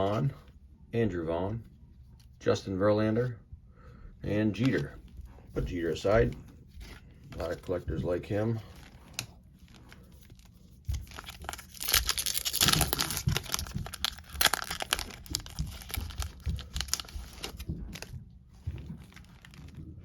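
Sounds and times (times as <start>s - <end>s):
wrapper crinkling and ripping: 8.7s - 18.1s, 19.0s - 19.8s.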